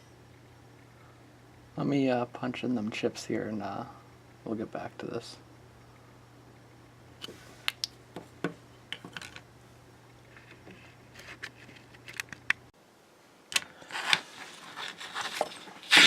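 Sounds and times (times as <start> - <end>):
faint steady hum: 0.0 - 16.0
clattering and rustling handling: 8.2 - 9.5, 10.2 - 12.6, 13.9 - 16.0.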